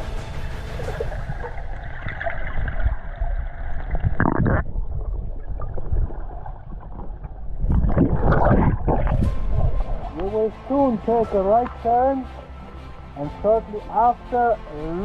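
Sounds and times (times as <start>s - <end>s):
underwater water sloshing and gurgling: 0.3s - 10.5s.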